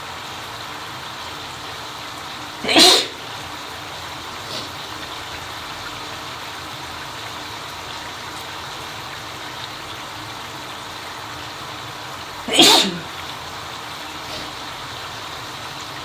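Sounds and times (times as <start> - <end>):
shower water running: 0.0 - 16.0.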